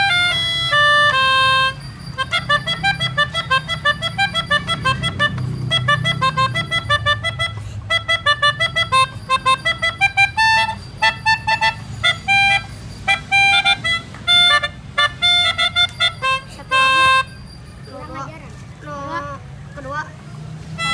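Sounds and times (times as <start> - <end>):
melodicas playing: 0.0 - 19.6.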